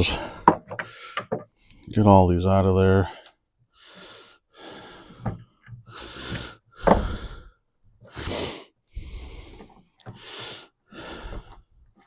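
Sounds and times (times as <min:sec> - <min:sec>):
man breathing hard: 0:00.0 - 0:01.9, 0:03.1 - 0:11.8.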